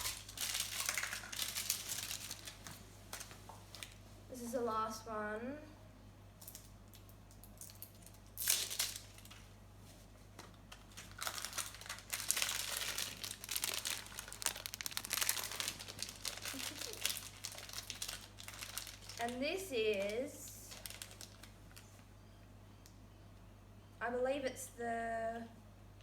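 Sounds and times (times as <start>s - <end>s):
packaging bag rustling: 0.0s - 4.0s, 8.4s - 22.0s.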